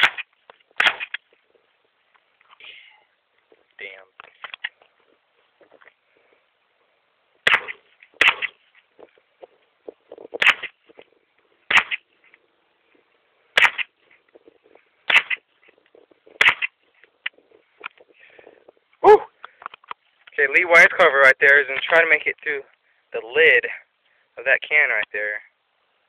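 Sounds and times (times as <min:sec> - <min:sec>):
gunshots: 0:00.0 - 0:01.2, 0:07.4 - 0:08.6, 0:10.4 - 0:10.8, 0:11.7 - 0:12.0, 0:13.6 - 0:13.9, 0:15.1 - 0:15.4, 0:16.4 - 0:16.8.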